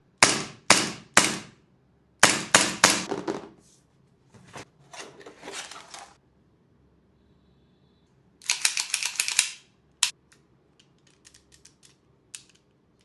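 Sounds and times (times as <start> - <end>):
airsoft pistol shots: 2.2 - 3.1.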